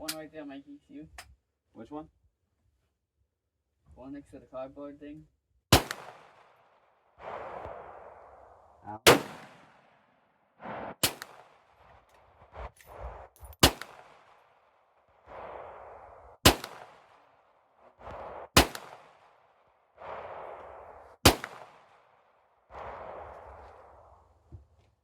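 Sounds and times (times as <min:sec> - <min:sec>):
pistol shots with echo: 0:05.7 - 0:06.6, 0:09.0 - 0:10.0, 0:11.0 - 0:11.7, 0:13.6 - 0:14.5, 0:16.4 - 0:17.2, 0:18.6 - 0:19.4, 0:21.2 - 0:22.0.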